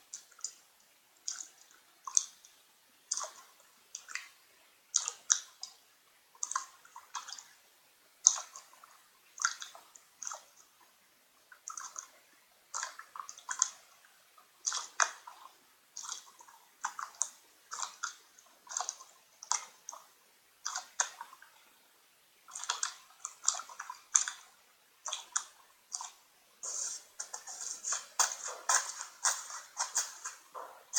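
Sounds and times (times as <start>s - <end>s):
slime squelching: 22.5s - 30.9s.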